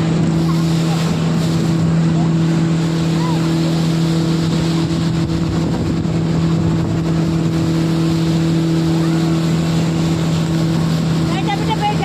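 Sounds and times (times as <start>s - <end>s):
motorboat engine humming: 0.0s - 12.0s
rushing water: 0.0s - 12.0s
wind noise: 4.3s - 8.3s.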